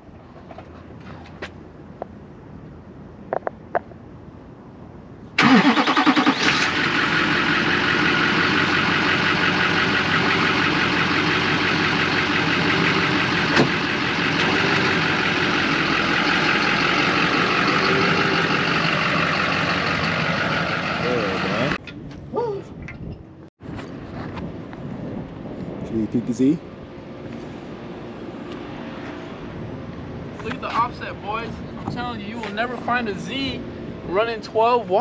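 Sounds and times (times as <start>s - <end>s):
diesel engine starting and idling: 5.4s - 21.8s.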